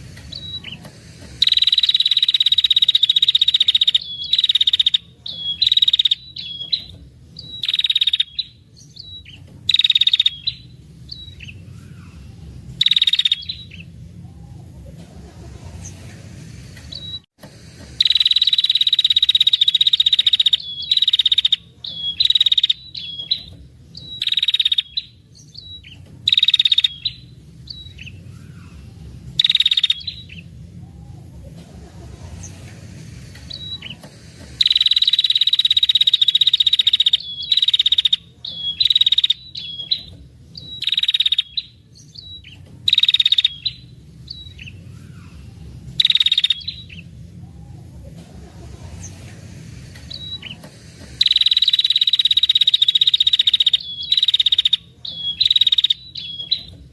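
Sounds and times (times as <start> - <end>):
bird rattling trills: 0.0 - 8.6, 17.9 - 25.0, 33.5 - 41.7, 42.4 - 43.8, 50.0 - 56.7
low steady hum: 0.0 - 56.9.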